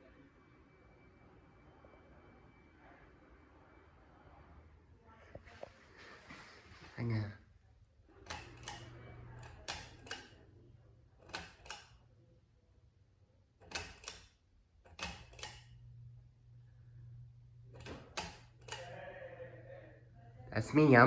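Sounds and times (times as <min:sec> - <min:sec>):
low fan hum: 0:00.0 - 0:21.0
fan switch clicking: 0:08.2 - 0:10.5, 0:11.2 - 0:12.0, 0:13.6 - 0:15.8, 0:17.7 - 0:19.1.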